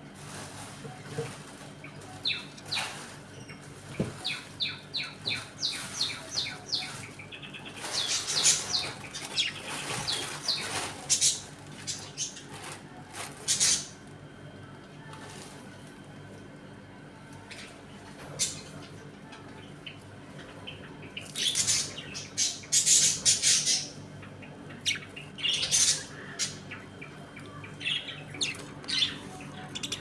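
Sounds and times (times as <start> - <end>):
budgerigars chirping: 4.2 - 11.4, 20.6 - 24.0.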